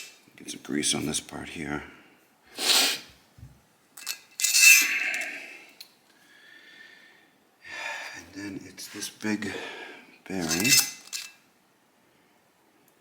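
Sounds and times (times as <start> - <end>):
grease gun hiss: 2.6 - 3.1.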